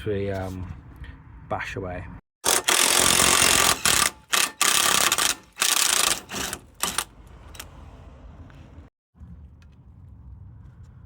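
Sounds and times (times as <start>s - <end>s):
rapid ratcheting clicks: 2.4s - 7.7s.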